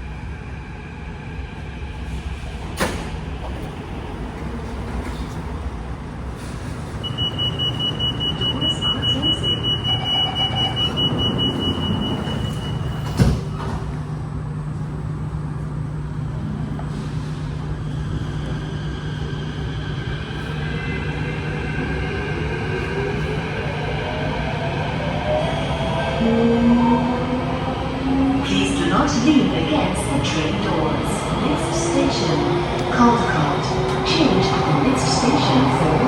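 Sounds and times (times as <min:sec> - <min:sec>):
pulsing door warning tone: 0:07.0 - 0:13.2.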